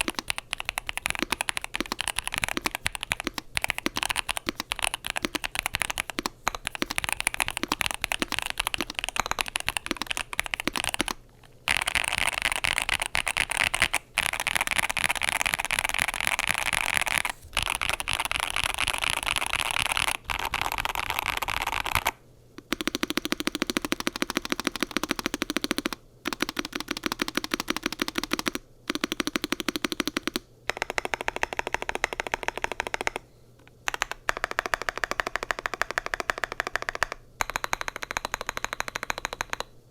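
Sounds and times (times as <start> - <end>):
mechanical keyboard typing: 0.0 - 39.8.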